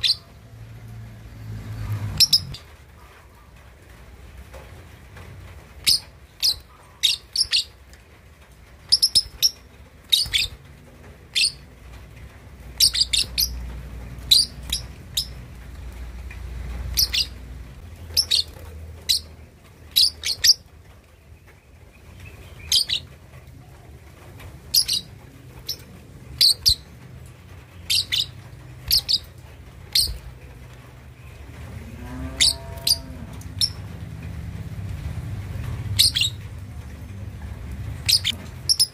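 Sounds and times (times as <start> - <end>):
lovebird high chirps: 5.9 - 7.7, 14.3 - 15.4, 16.9 - 17.3, 20.0 - 20.6, 22.6 - 23.1, 24.8 - 25.1, 27.9 - 29.3, 29.9 - 30.2, 36.0 - 36.4, 38.0 - 38.9.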